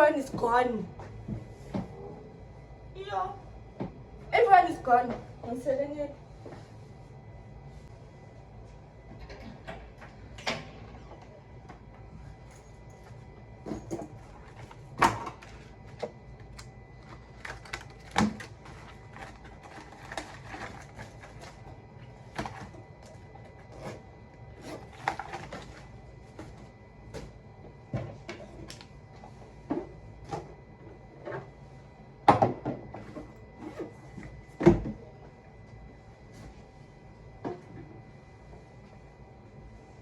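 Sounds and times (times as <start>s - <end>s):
faint high hum: 0.0s - 40.0s.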